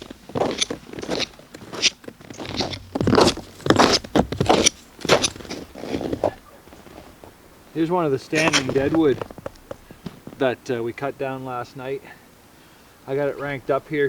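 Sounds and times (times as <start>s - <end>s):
footsteps crunching in snow: 0.0s - 10.7s.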